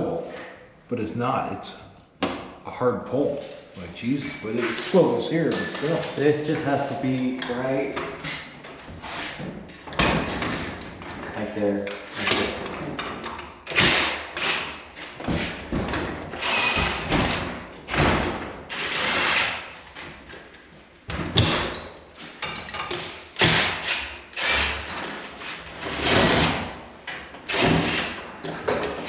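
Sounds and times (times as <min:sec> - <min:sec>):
knocks and clanks: 0:15.2 - 0:18.6
power tool bursts: 0:16.4 - 0:17.1.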